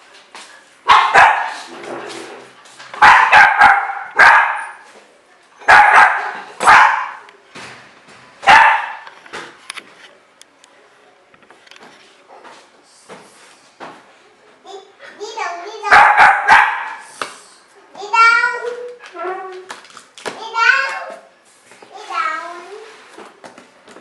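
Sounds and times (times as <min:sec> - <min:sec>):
dog barking loudly: 0:00.9 - 0:01.7, 0:03.0 - 0:04.8, 0:05.6 - 0:07.2, 0:08.4 - 0:09.0, 0:15.8 - 0:17.1.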